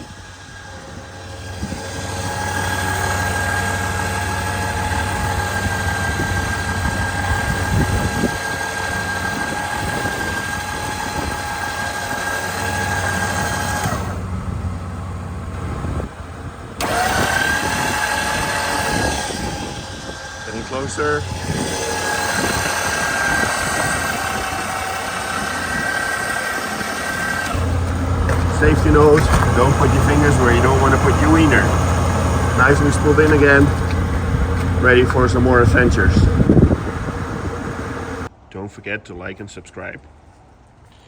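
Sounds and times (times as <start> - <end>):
electric winch motor whine: 0.0 - 38.3
low steady hum: 27.4 - 38.3.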